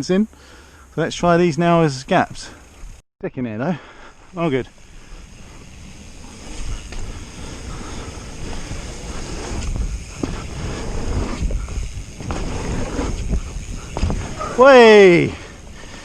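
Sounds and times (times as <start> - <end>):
tyres rumbling on dirt: 4.3 - 16.0
wind buffeting microphone: 5.0 - 14.6
bike knocks and rattles: 5.2 - 16.0.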